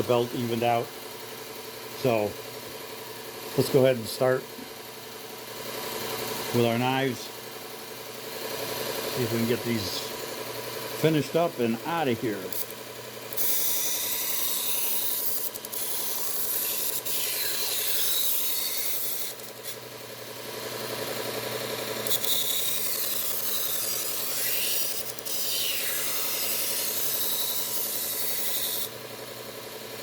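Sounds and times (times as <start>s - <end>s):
motor hum: 0.1s - 30.0s
knife grinding on belt sharpener: 8.4s - 19.9s, 21.0s - 29.0s.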